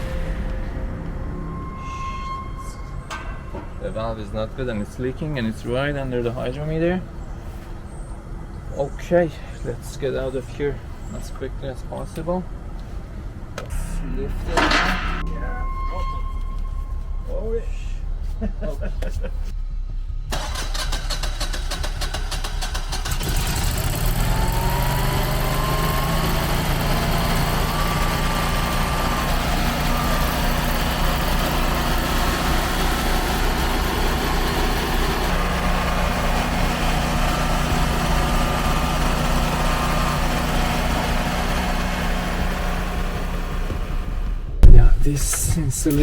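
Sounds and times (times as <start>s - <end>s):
generator engine running: 19.6s - 44.6s.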